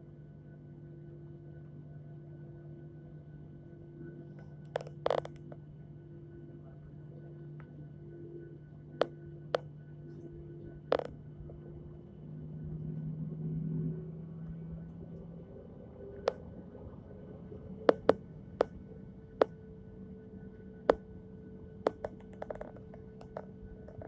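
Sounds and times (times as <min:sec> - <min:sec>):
airliner cabin hum: 0:00.0 - 0:24.0
sharp clicks and knocks: 0:04.6 - 0:05.6, 0:10.9 - 0:11.6, 0:17.9 - 0:18.8, 0:21.8 - 0:24.0.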